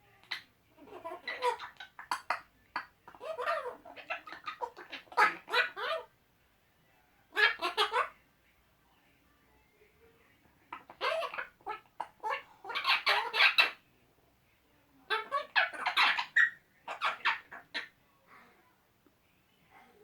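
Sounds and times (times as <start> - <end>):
parrots squawking: 0.2 - 6.1, 7.3 - 8.2, 10.7 - 13.8, 15.1 - 17.9.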